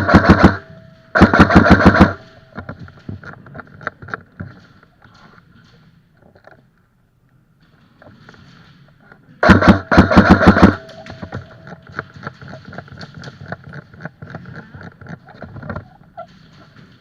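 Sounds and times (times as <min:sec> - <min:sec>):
airsoft gun full-auto burst: 0:00.0 - 0:00.6, 0:01.2 - 0:02.2, 0:09.4 - 0:10.9.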